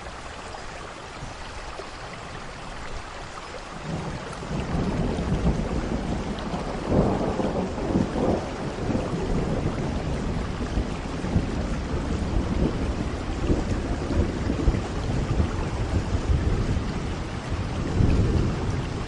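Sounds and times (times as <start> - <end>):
steady rain falling: 0.0 - 19.0
thunder rumbling: 3.9 - 19.0.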